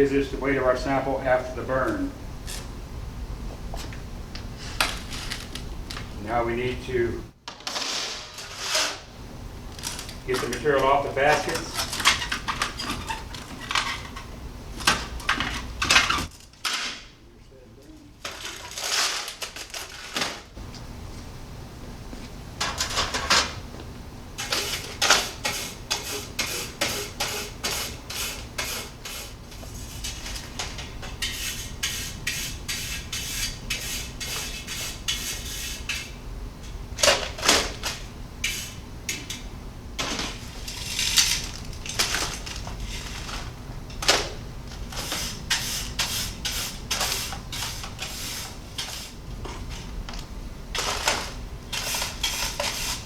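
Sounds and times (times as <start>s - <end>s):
metallic scraping strokes: 31.1s - 36.2s.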